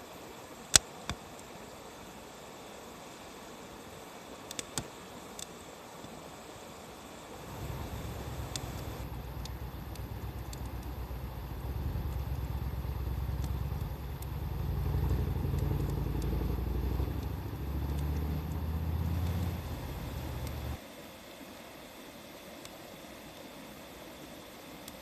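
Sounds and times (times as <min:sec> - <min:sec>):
vehicle engine rumbling: 0:07.4 - 0:20.8
wood fire popping: 0:07.4 - 0:20.8.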